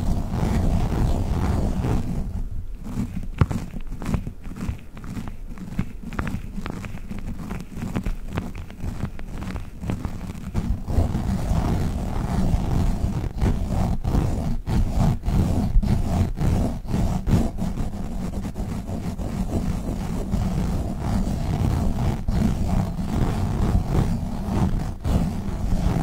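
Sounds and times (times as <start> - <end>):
sticky toy balls squishing: 2.8 - 12.0.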